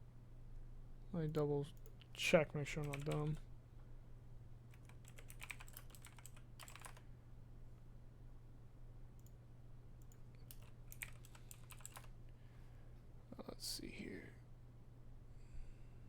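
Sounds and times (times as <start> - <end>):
typing on computer keyboard: 2.8 - 3.4, 4.7 - 7.0, 10.0 - 12.1.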